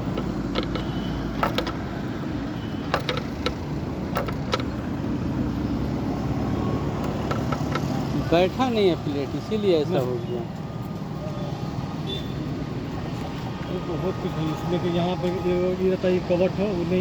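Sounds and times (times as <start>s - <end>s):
low vehicle engine rumble: 0.0s - 9.8s.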